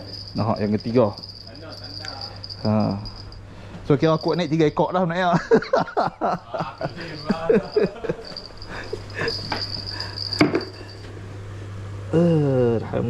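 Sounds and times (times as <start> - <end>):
insect chirring: 0.0 - 5.0, 6.7 - 11.1
low steady hum: 0.0 - 13.0.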